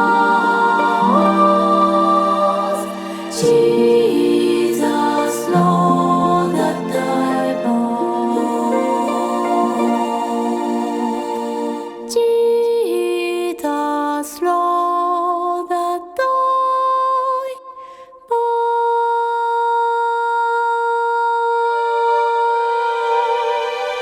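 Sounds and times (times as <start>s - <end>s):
wordless singing on held notes: 0.0s - 12.6s.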